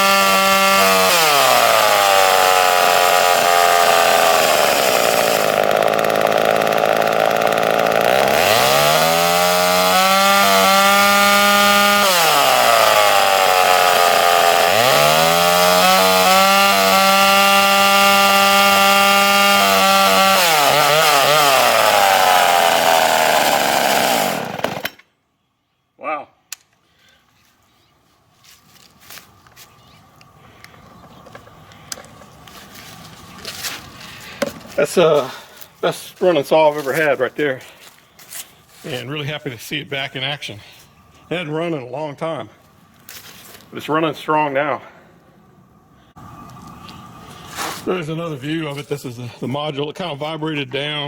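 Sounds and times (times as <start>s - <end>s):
chainsaw engine revving: 0.0s - 25.0s.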